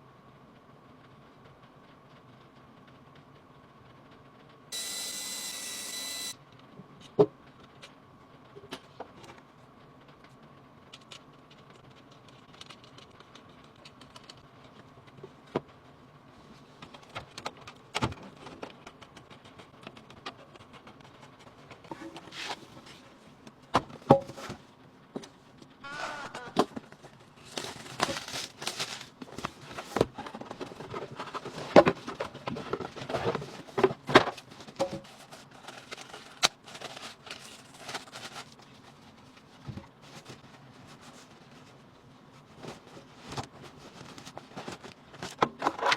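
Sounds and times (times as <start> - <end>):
steady electronic tone: 4.8 - 6.4
hands handling computer parts: 26.6 - 45.9.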